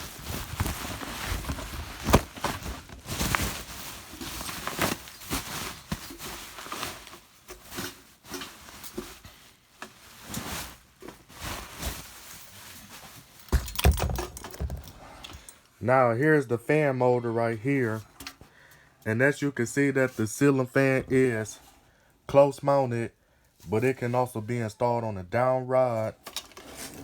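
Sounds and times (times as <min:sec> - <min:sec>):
packaging rustling and knocking: 0:00.0 - 0:15.5.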